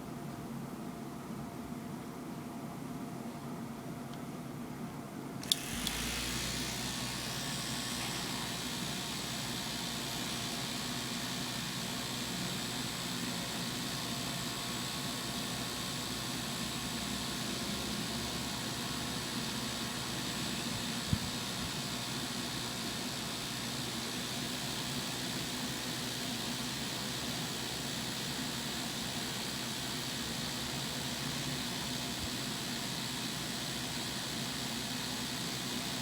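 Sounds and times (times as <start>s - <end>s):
spinning fan display whirring: 5.4s - 13.9s.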